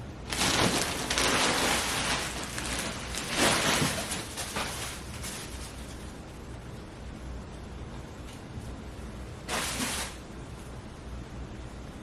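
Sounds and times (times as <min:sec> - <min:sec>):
plastic packaging crinkling: 0:00.3 - 0:06.1.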